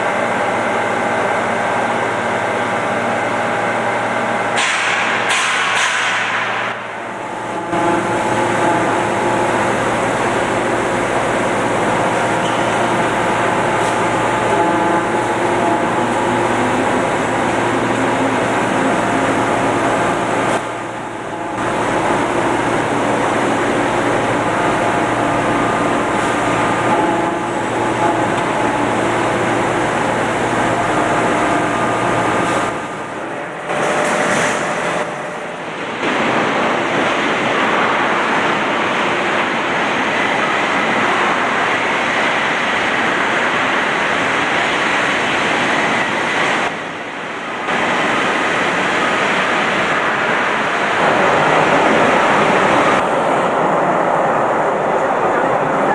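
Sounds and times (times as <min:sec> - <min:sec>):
hydraulic machinery running: 0:00.0 - 0:55.8
low hum: 0:06.6 - 0:43.7.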